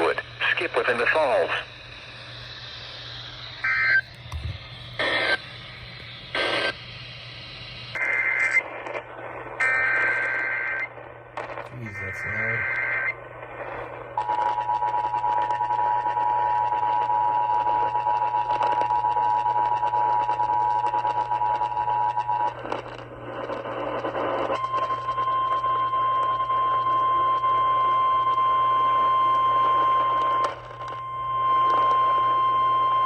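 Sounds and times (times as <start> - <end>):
radio static crackling: 0.0 - 28.5
steady warning alarm tone: 0.9 - 8.5, 24.6 - 33.0.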